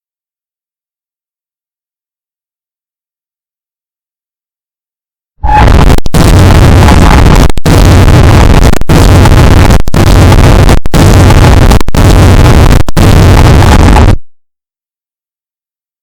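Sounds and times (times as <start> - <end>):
loud distorted noise: 5.4 - 14.3.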